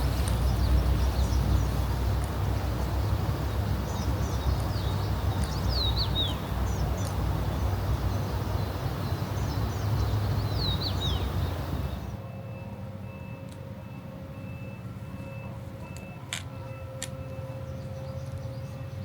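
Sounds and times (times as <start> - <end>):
songbird chirping: 0.0 - 12.2, 15.4 - 19.0
vehicle reversing beeper: 10.6 - 18.8.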